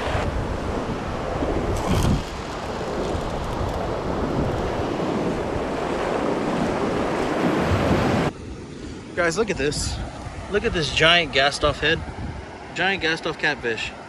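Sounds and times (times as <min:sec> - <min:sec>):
surf breaking on beach: 0:00.0 - 0:08.3
wind buffeting microphone: 0:00.0 - 0:12.8.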